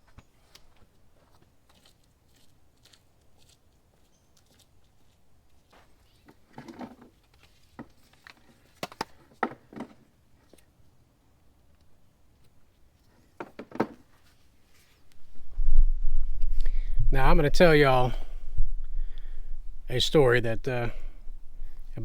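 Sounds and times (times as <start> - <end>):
objects being handled: 6.1 - 10.7.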